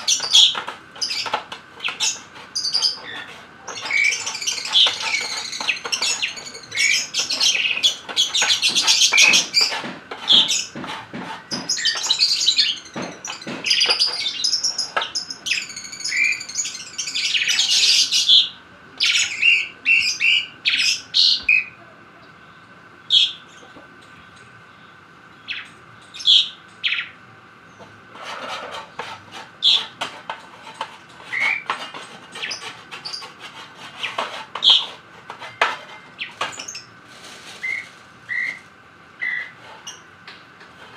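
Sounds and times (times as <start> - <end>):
lovebirds chirping: 0.0 - 10.8, 37.6 - 38.6, 39.2 - 40.1.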